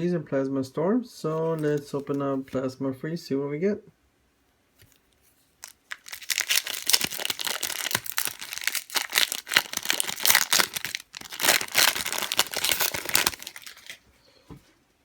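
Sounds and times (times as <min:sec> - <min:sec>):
foil wrapper tearing and crinkling: 0:01.4 - 0:02.2, 0:05.6 - 0:14.0.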